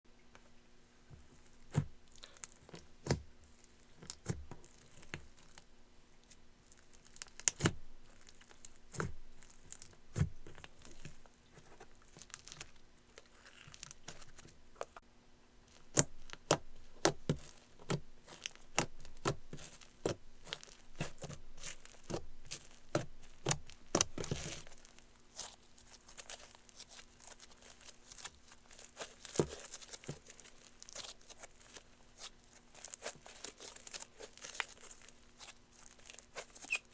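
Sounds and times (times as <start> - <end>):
sticky slime stretching: 1.2 - 15.0, 15.7 - 36.9.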